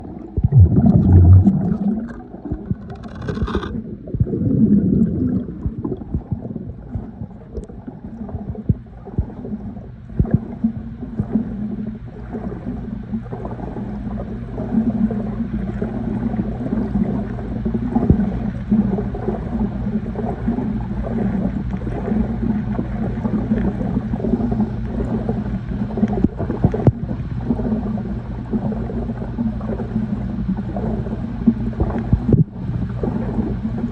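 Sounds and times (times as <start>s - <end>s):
underwater low hum: 0.0s - 33.9s
water gurgling: 0.0s - 33.9s
crackles: 0.1s - 4.6s.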